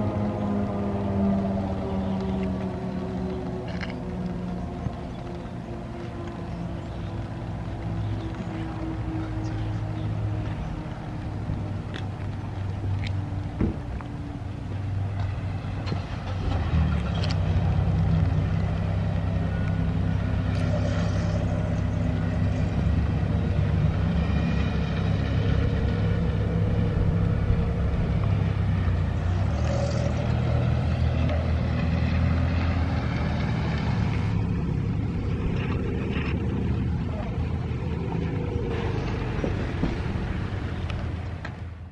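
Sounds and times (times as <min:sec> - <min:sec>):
vehicle engine droning: 0:00.0 - 0:41.9.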